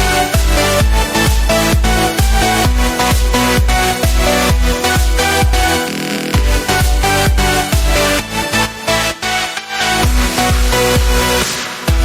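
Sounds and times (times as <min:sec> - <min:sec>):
pounding kick drum: 0:00.0 - 0:08.0
electronic dance music: 0:00.0 - 0:12.0
sustained synth notes: 0:04.2 - 0:08.2.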